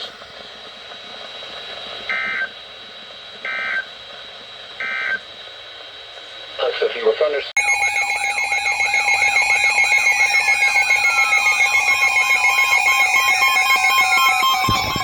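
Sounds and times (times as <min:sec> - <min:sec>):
steady alarm tones: 0:03.4 - 0:03.9, 0:04.8 - 0:05.2, 0:07.6 - 0:15.0
warbling alarm tone: 0:07.6 - 0:15.0.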